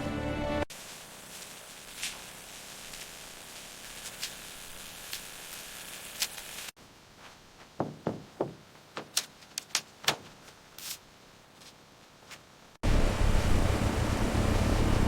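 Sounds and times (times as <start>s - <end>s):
steady hiss: 0.7s - 8.2s
dull thuds: 7.6s - 9.2s
sharp irregular knocks: 7.8s - 10.4s.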